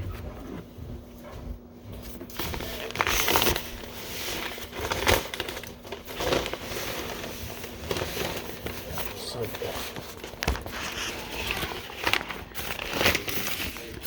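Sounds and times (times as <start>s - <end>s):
sandwich wrapping crinkling: 2.0s - 14.0s.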